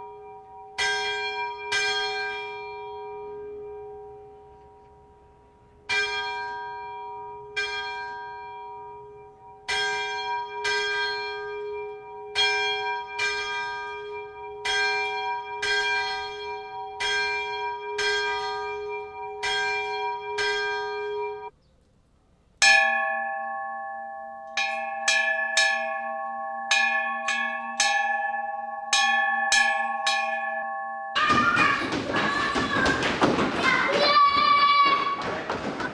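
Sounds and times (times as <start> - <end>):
church bell tolling: 0.0 - 21.5, 22.6 - 35.9
school bell struck: 22.6 - 35.9.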